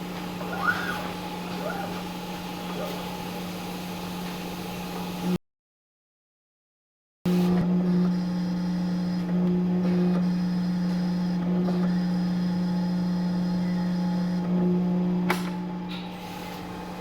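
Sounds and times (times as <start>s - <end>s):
paper cutting machine motor hum: 7.3s - 15.9s.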